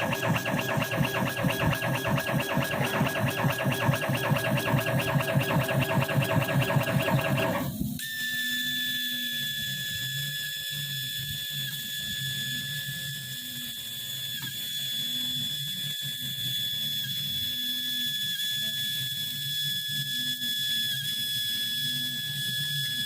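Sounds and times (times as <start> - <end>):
low motor hum: 0.0 - 7.8
laser machine high whine: 0.0 - 23.0.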